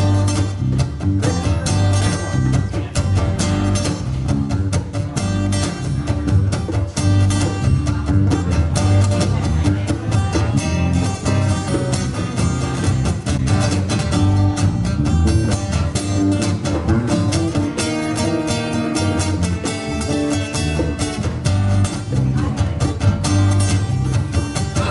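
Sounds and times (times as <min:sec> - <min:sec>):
live band guitar instrumental: 0:00.0 - 0:24.9.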